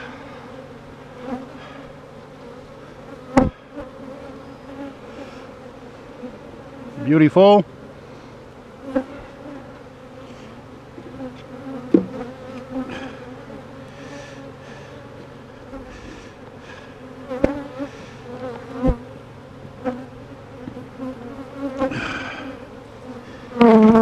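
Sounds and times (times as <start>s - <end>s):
honey bees buzzing: 0.0s - 24.0s
sharp knocks: 11.9s - 12.2s.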